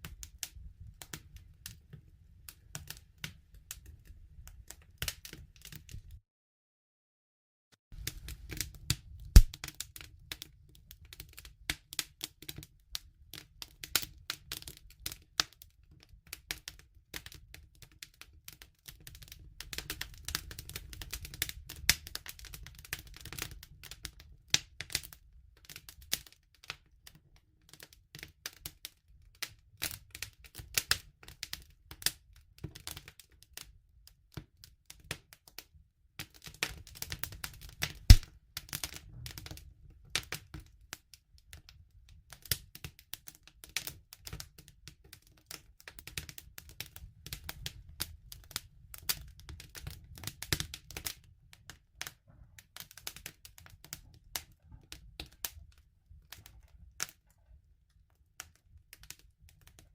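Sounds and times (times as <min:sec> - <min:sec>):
campfire crackling: 0:08.0 - 0:10.4, 0:37.0 - 0:38.3.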